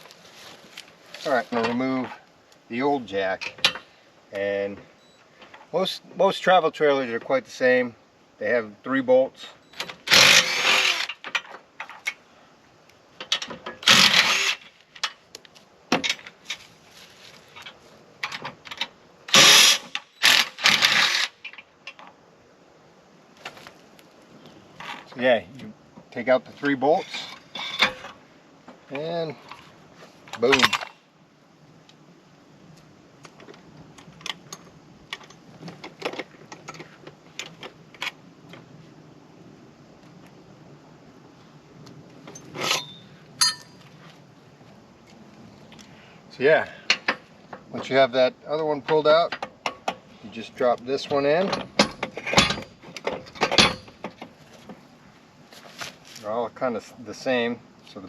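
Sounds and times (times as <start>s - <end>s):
metal hardware clicks and knocks: 3.4s - 3.9s, 13.2s - 13.9s, 30.3s - 31.0s, 42.3s - 43.9s, 46.9s - 48.0s, 48.8s - 50.1s, 51.0s - 54.8s
power tool bursts: 10.0s - 11.2s, 13.8s - 14.7s, 19.3s - 21.4s.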